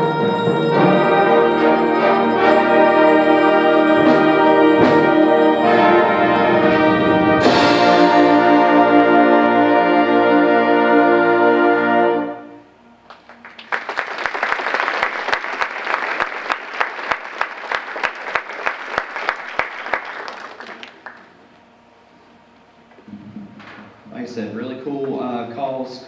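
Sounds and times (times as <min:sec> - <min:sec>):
symphonic band holding a chord: 0:00.0 - 0:12.8
audience applause: 0:13.1 - 0:21.4.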